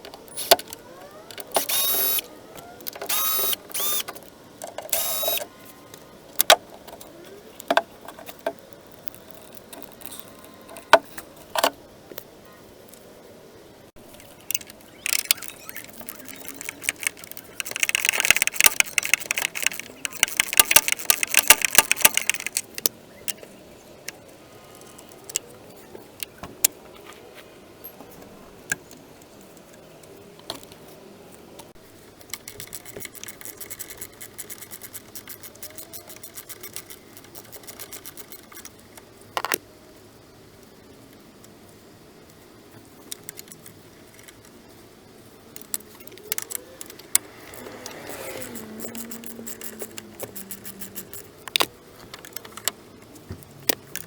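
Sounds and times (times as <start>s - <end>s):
rapid even clicks: 14.0s - 25.5s, 32.2s - 38.8s, 45.6s - 54.0s.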